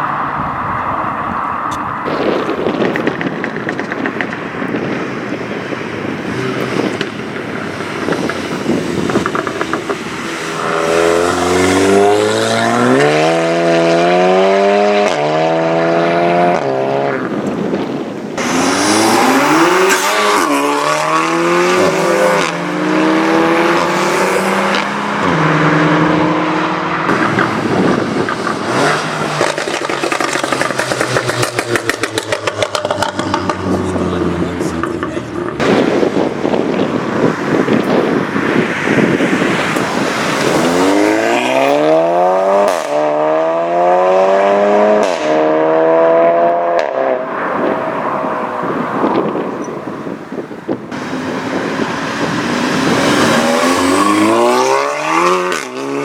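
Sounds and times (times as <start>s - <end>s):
car engine accelerating hard: 6.0s - 17.7s, 18.4s - 50.0s, 50.7s - 56.0s
exhaust crackles: 26.9s - 43.1s.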